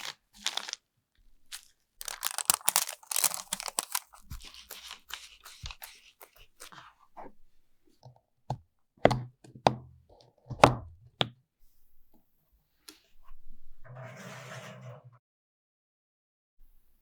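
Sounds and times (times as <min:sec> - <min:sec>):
knocks on hard kitchen surface: 0:09.1 - 0:09.9.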